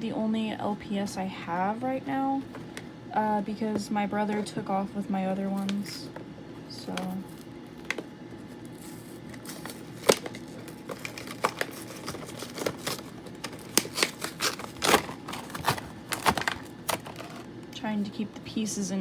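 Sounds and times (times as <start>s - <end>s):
cardboard and plastic packaging snapping: 6.8s - 17.5s.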